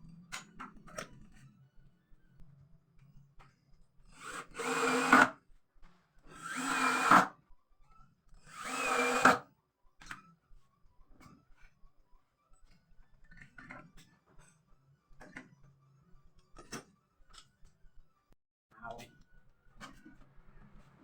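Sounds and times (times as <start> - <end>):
electric drill bursts: 4.2 - 5.3, 6.3 - 7.3, 8.5 - 9.4.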